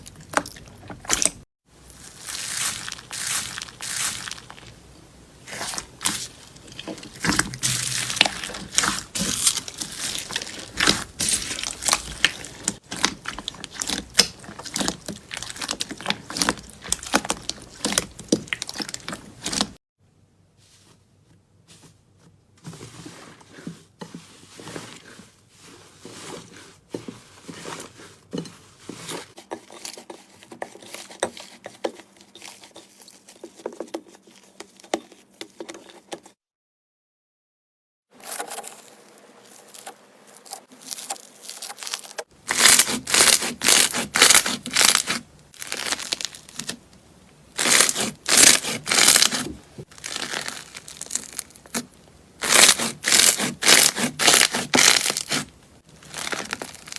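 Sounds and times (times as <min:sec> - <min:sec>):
slime crackling and popping: 0:05.5 - 0:19.8, 0:39.6 - 0:46.8, 0:47.6 - 0:56.9.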